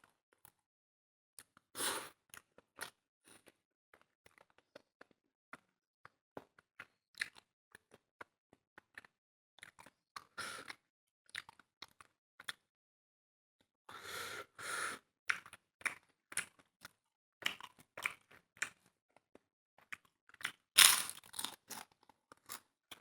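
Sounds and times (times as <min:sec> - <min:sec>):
chewing food: 0:02.3 - 0:12.7, 0:15.3 - 0:23.0.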